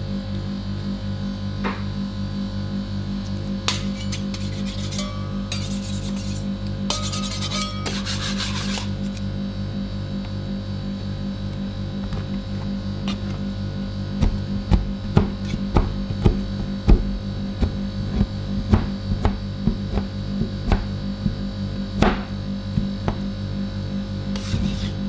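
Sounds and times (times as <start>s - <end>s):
refrigeration unit pulsing hum: 0.0s - 25.0s
metal spatulas striking steel plate: 3.7s - 6.3s, 6.9s - 8.4s.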